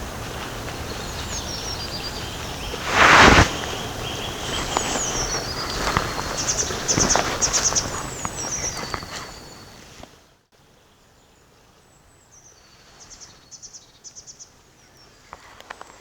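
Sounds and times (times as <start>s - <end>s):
high thin birdsong: 0.0s - 10.2s
faint outdoor ambience: 0.0s - 16.0s.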